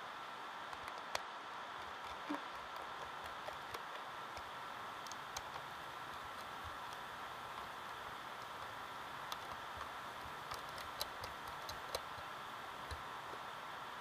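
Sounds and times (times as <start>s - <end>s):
steady hiss: 0.0s - 14.0s
small parts clicking and tapping: 0.6s - 13.5s.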